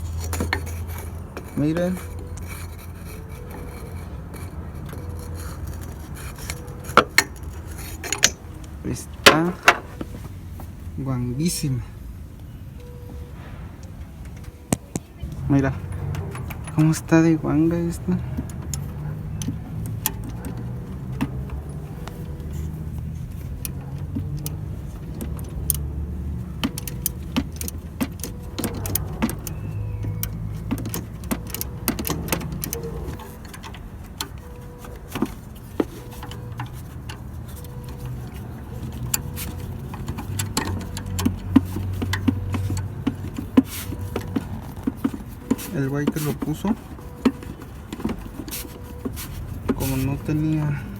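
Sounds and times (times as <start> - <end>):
metal hand tools clinking: 0.0 - 10.0.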